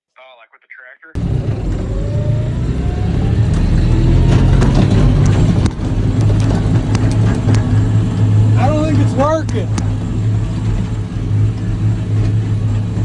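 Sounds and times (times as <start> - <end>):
faint rising whine: 1.2 - 13.0
heavy equipment engine running: 1.2 - 13.0
metallic clicks and clanks: 3.4 - 8.4.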